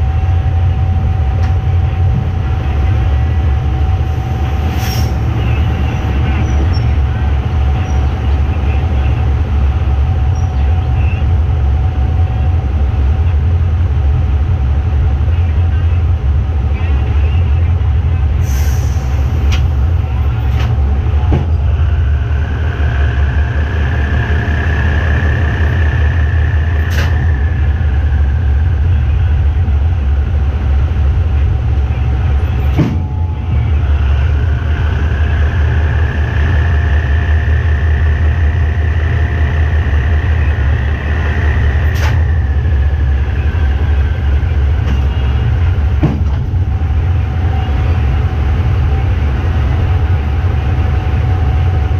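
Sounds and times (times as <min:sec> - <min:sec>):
diesel locomotive engine drone: 0:00.0 - 0:51.9
high whine: 0:00.0 - 0:51.9.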